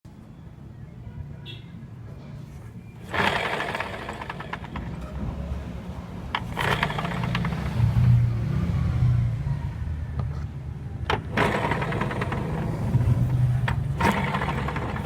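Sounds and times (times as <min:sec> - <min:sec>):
noisy gearbox: 0:02.9 - 0:05.6, 0:06.3 - 0:08.4, 0:11.0 - 0:15.0
scooter engine running: 0:03.0 - 0:05.6, 0:06.2 - 0:08.7, 0:11.1 - 0:15.0.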